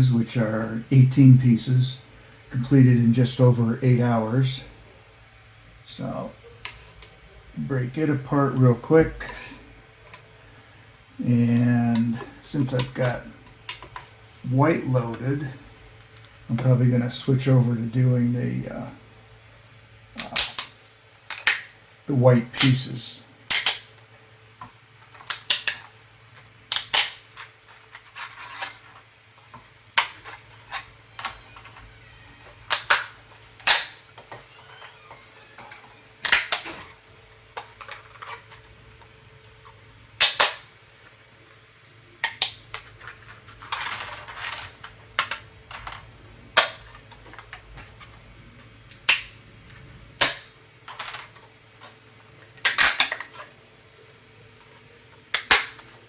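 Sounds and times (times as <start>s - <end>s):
faint steady hum: 0.0s - 56.0s
plastic pieces cracking and snapping: 20.2s - 21.8s, 23.5s - 23.9s, 25.1s - 25.9s, 26.7s - 27.5s, 30.0s - 36.9s, 40.2s - 40.7s, 42.2s - 45.4s, 48.9s - 49.4s, 50.2s - 50.5s, 52.6s - 53.4s, 55.3s - 55.9s.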